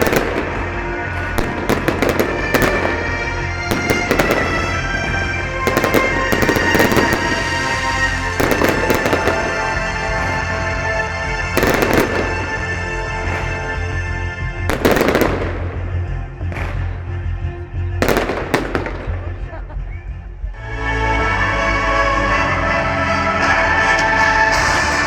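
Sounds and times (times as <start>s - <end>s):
fireworks bangs and crackling: 0.0s - 19.7s.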